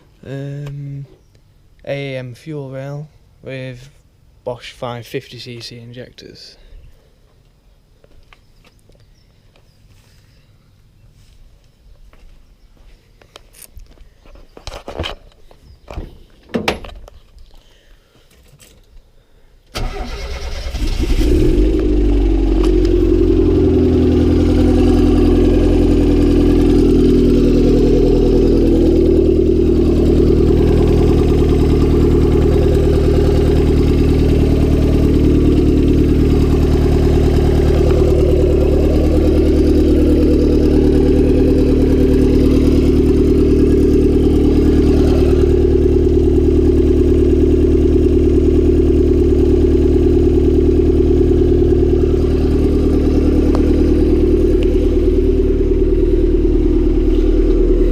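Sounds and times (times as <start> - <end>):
car engine starting and idling: 19.7 - 57.9.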